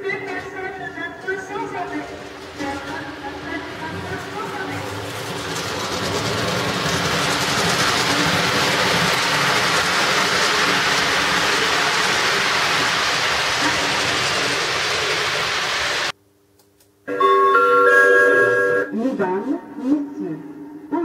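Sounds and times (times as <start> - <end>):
train rumble and rail noise: 0.0 - 16.1.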